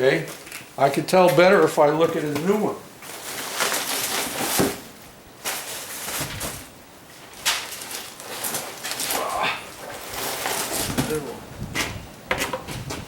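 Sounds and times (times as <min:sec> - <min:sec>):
plastic taillight rustling and scraping: 0:07.4 - 0:09.2, 0:09.8 - 0:13.0.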